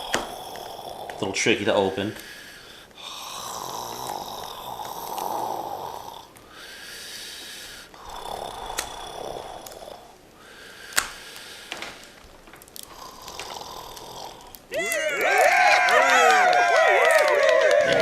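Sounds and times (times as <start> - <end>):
cardboard clicks and snaps: 0.0 - 0.8, 8.7 - 9.0, 10.9 - 15.6.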